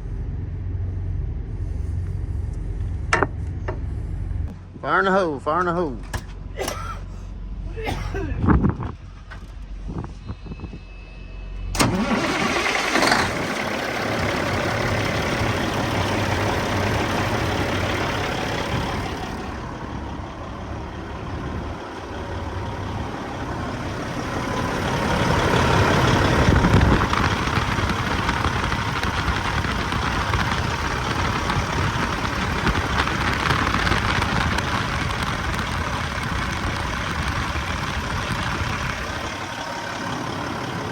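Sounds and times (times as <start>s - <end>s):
diesel truck engine starting and idling: 10.8s - 40.9s.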